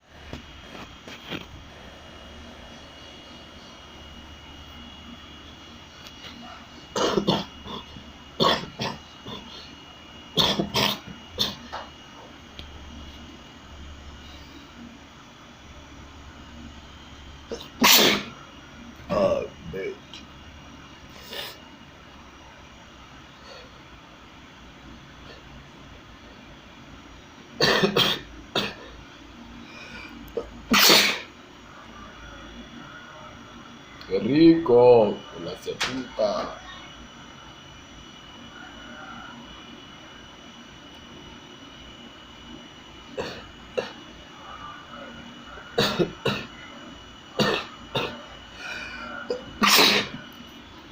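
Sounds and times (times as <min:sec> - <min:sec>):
person sneezing: 0:17.5 - 0:18.3, 0:30.7 - 0:31.3, 0:47.4 - 0:50.2.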